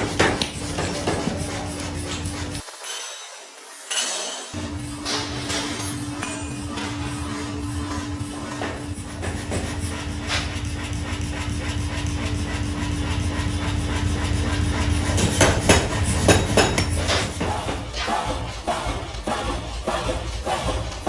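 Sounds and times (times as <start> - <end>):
machinery humming: 0.0 - 2.6, 4.6 - 21.0
metal clanking and knocking: 0.0 - 2.6, 8.5 - 21.0.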